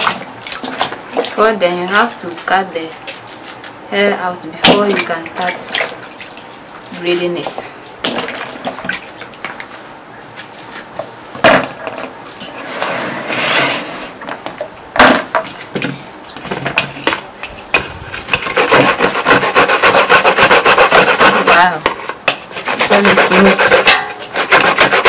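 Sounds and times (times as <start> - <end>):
okra rasping on hand grater: 18.3 - 21.9, 22.5 - 25.0.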